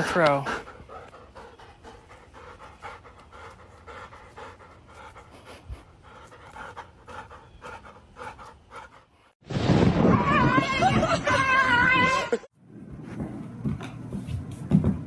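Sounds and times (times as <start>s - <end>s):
dog panting: 0.0s - 9.4s.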